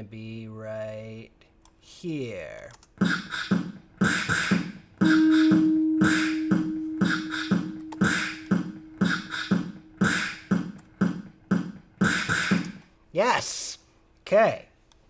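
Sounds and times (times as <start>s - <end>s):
beatbox vocal percussion loop: 3.0s - 12.8s
held low note: 5.0s - 10.6s.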